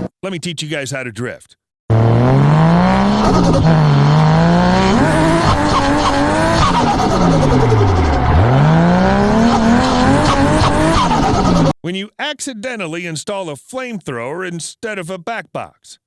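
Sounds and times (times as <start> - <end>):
car engine revving: 1.9 - 11.8.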